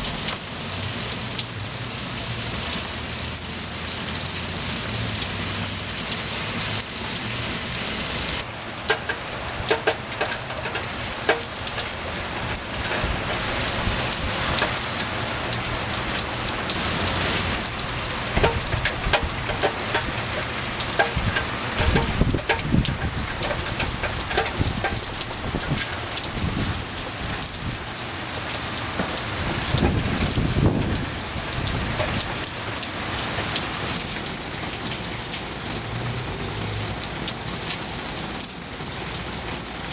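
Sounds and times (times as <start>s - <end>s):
rain drops tapping on a surface: 0.0s - 39.9s
low rumbles: 8.9s - 28.0s.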